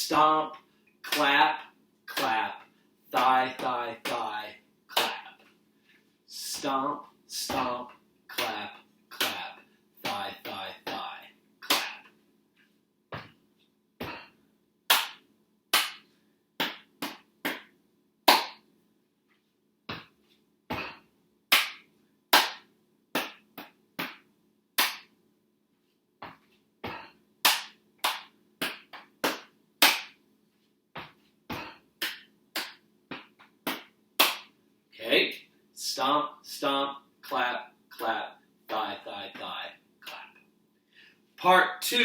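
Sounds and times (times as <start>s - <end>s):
hand claps: 1.1s - 1.4s, 2.1s - 2.5s, 4.9s - 5.3s, 8.3s - 12.1s, 14.9s - 17.7s, 18.3s - 18.6s, 19.9s - 25.1s, 26.2s - 30.2s, 31.0s - 34.6s
thigh slaps: 2.1s - 2.4s, 4.9s - 5.4s, 7.5s - 12.1s, 14.9s - 17.7s, 19.9s - 25.1s, 26.2s - 30.2s, 31.0s - 34.6s
foot stomps: 13.1s - 13.4s, 19.9s - 21.0s, 26.2s - 30.2s, 31.0s - 34.5s.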